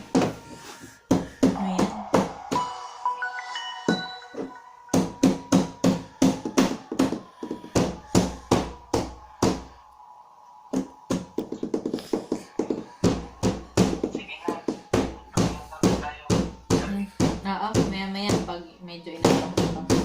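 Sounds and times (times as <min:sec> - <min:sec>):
phone ringtone melody: 0:02.4 - 0:05.7.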